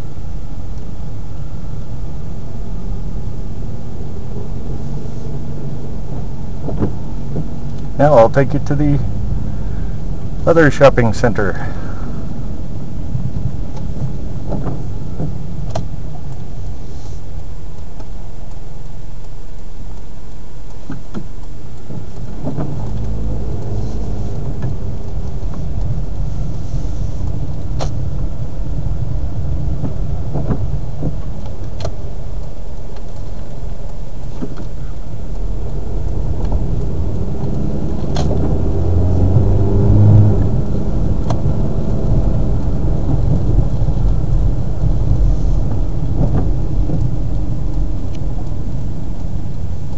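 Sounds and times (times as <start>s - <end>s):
car road and engine rumble: 0.0s - 49.9s
sharp ticks: 17.8s - 28.5s.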